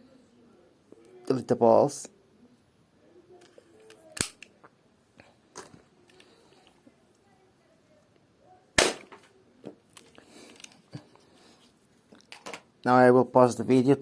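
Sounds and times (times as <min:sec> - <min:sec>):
toy gun clicking: 0:03.9 - 0:04.5
loud sharp snap: 0:08.8 - 0:09.2.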